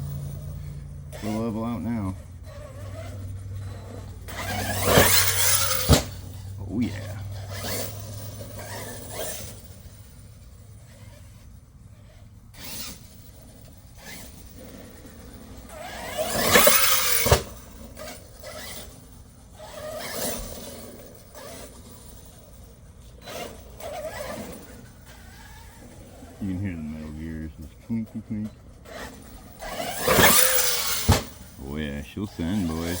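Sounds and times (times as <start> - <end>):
rc car motor whining: 0.0 - 33.0
metal gears clinking: 2.4 - 10.6, 13.8 - 18.9, 28.9 - 31.6.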